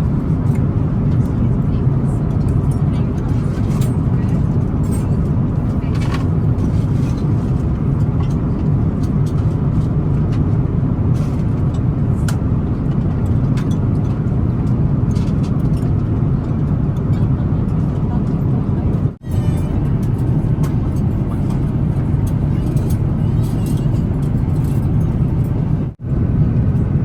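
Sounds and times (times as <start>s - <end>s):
airplane cabin engine rumble: 0.0s - 27.0s.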